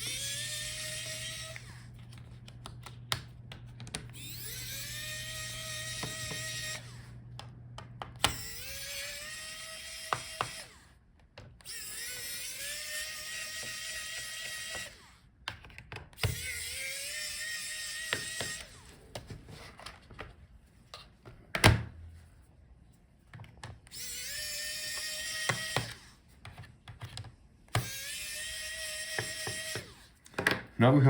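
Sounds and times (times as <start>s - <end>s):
electric screwdriver motor whine: 0.0s - 2.1s, 3.8s - 11.0s, 11.6s - 15.2s, 16.2s - 18.9s, 23.9s - 26.2s, 27.7s - 30.1s.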